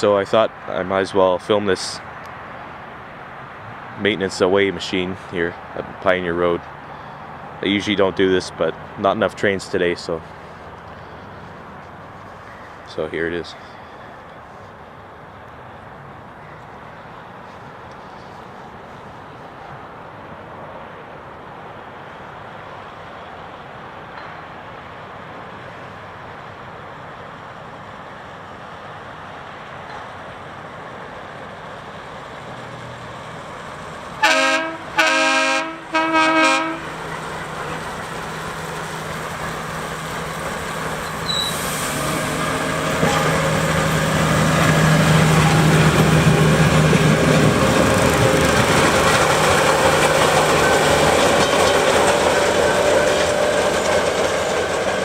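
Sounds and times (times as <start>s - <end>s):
rail machine rumble: 3.6s - 55.0s
engine hum: 31.8s - 55.0s
horn blasts: 34.2s - 37.0s, 41.3s - 43.8s.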